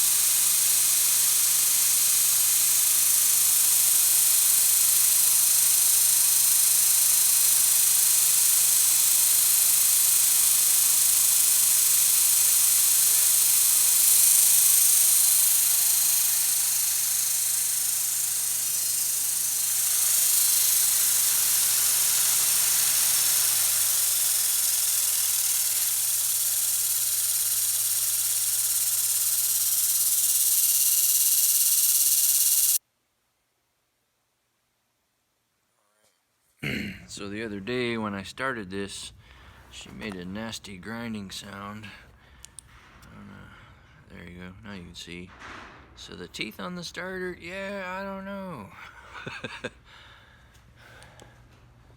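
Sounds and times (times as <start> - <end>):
welder engine running: 0.0 - 32.8.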